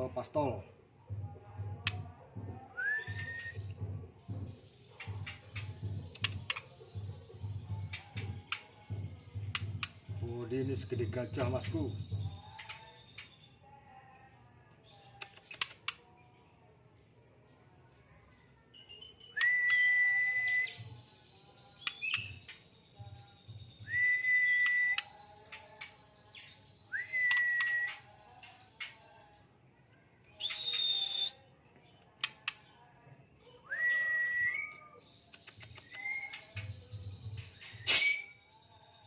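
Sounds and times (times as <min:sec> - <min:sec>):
bird whistling song: 0:01.8 - 0:04.4, 0:05.0 - 0:13.5, 0:18.8 - 0:29.3, 0:30.3 - 0:31.6, 0:33.5 - 0:39.0.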